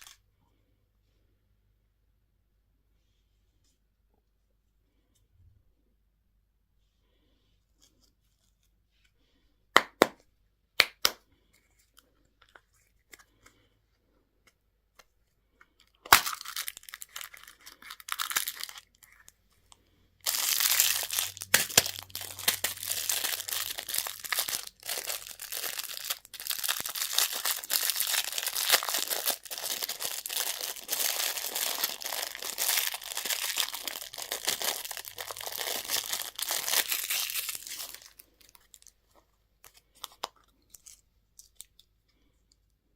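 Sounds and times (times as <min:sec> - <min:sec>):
plastic wrapper crinkling and tearing: 0:15.8 - 0:42.0.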